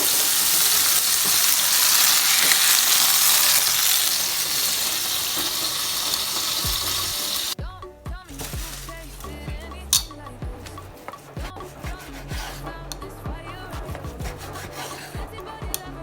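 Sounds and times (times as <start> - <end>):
steak sizzling in a pan: 0.0 - 7.6.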